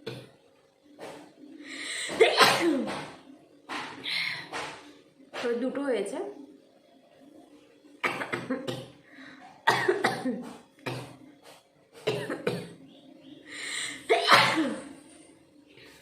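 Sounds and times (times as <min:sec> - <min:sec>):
woman coughing hard: 0:02.1 - 0:03.0, 0:08.0 - 0:09.0, 0:09.6 - 0:11.2, 0:12.0 - 0:12.8, 0:14.0 - 0:14.9
hissing breath: 0:13.5 - 0:14.1.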